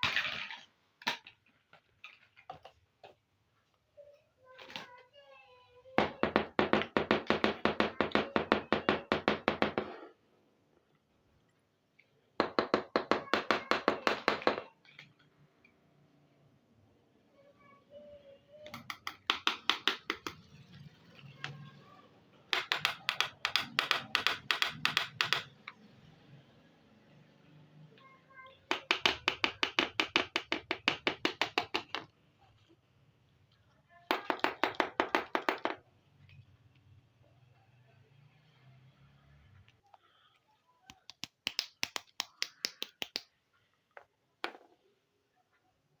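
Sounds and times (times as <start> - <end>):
plastic toy pieces clicking: 22.5 - 25.6, 40.9 - 43.3.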